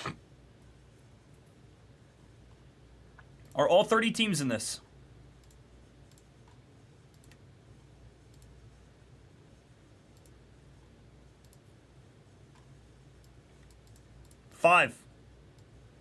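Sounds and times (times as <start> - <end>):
faint clicks: 10.2 - 10.4, 11.4 - 11.6, 12.5 - 14.4.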